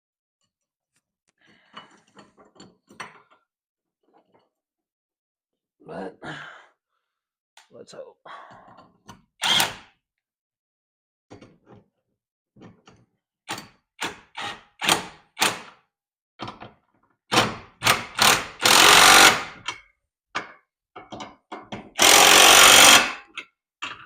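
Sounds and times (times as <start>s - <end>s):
cordless impact wrench hammering: 17.3s - 19.7s, 22.0s - 23.4s
clicks and knocks of parts: 19.6s - 22.0s.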